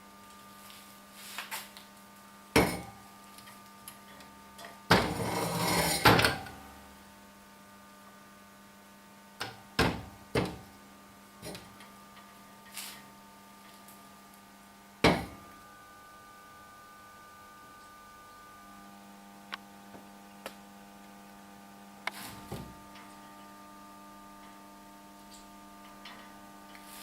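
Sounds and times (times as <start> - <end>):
electrical hum: 0.0 - 27.0
rough scraping: 5.1 - 6.1.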